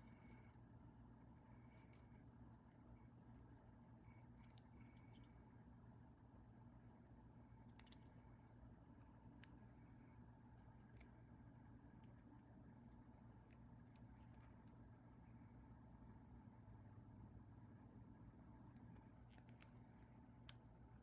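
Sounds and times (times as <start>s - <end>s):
faint low hum: 0.0s - 21.0s
faint small clicks: 7.6s - 8.3s, 18.7s - 20.6s.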